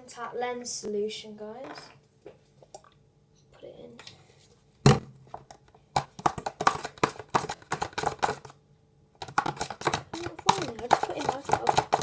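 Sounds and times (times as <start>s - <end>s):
spoon stirring slime in a bowl: 5.3s - 8.6s, 9.2s - 12.0s.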